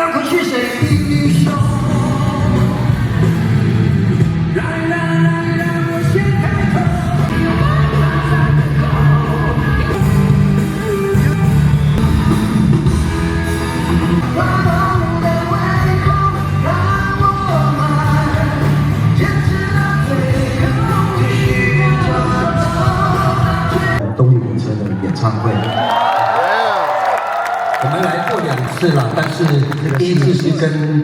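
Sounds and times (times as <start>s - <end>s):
person singing: 0.0s - 3.5s, 4.5s - 11.6s, 13.9s - 24.0s
live rock band: 0.0s - 24.0s
bass notes: 0.9s - 24.6s.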